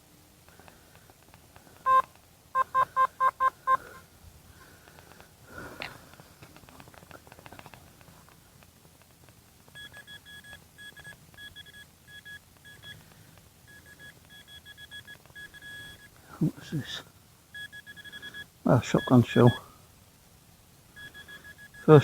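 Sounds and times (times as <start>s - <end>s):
metal detector short beeps: 1.9s - 3.9s, 9.8s - 13.0s, 13.7s - 16.1s, 17.6s - 19.6s, 21.0s - 22.0s.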